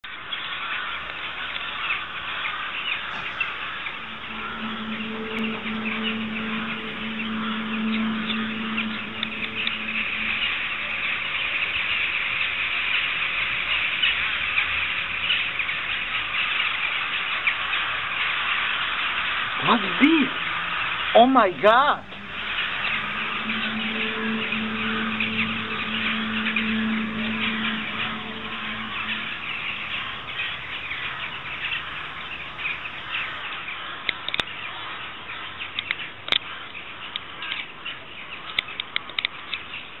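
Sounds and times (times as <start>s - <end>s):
flock of birds chirping: 0.0s - 40.0s
low hum: 1.0s - 13.0s, 20.3s - 33.4s.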